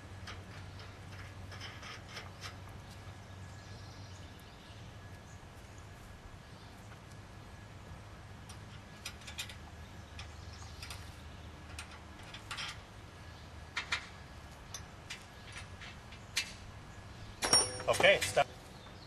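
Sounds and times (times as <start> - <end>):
light metallic clicks and clinks: 13.7 - 16.6, 17.4 - 18.5.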